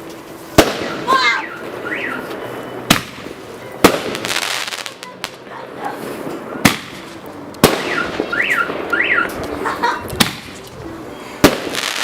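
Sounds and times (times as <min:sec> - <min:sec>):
firework bangs: 0:00.5 - 0:10.7, 0:11.4 - 0:12.0
firework whistle: 0:00.6 - 0:03.0, 0:07.7 - 0:09.4.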